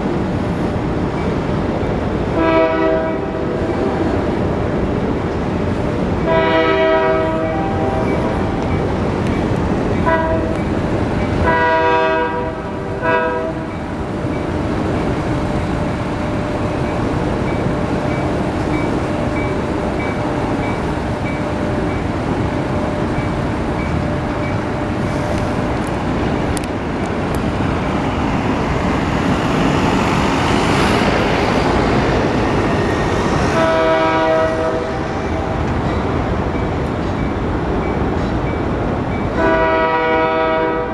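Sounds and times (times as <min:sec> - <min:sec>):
freight train rumbling: 0:00.0 - 0:40.9
locomotive air horn: 0:02.4 - 0:03.4, 0:06.3 - 0:08.1, 0:10.1 - 0:10.6, 0:11.4 - 0:13.7, 0:33.5 - 0:35.0, 0:39.4 - 0:40.9.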